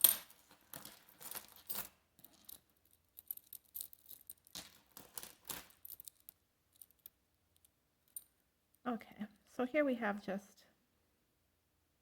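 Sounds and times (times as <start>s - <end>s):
jewelry rustling clatters: 0.0s - 8.4s
jewelry clinking and rattling: 0.0s - 8.8s.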